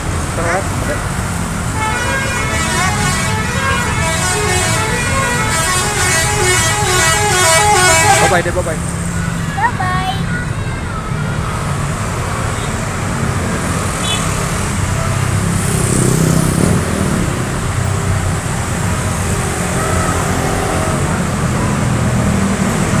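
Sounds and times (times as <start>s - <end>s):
traffic engines rumbling: 0.0s - 23.0s
vehicle passing close: 1.0s - 8.9s.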